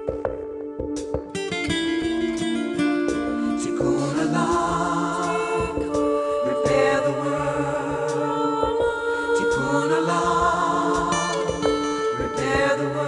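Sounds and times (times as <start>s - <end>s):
choir singing held chords: 2.7s - 13.0s.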